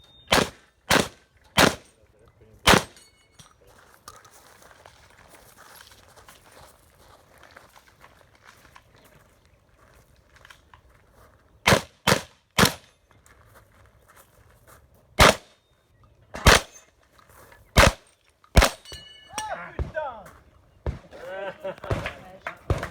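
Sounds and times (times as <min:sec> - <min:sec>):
shotgun shots: 0:00.3 - 0:02.0, 0:02.6 - 0:03.0, 0:11.6 - 0:12.9, 0:15.2 - 0:15.6, 0:16.4 - 0:16.8, 0:17.8 - 0:19.1, 0:21.8 - 0:22.9.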